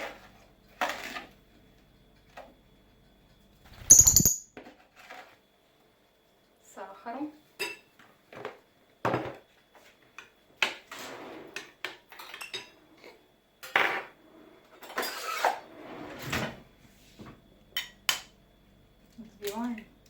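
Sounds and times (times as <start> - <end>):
spoon clinking against bowl: 3.8 - 4.5.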